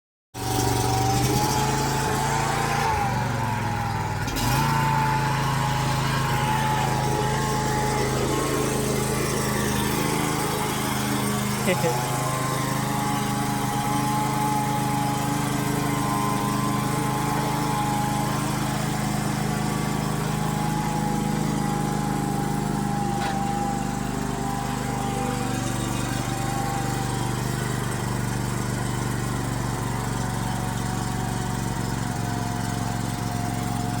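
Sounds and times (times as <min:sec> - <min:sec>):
lawn mower engine running: 0:00.4 - 0:34.0.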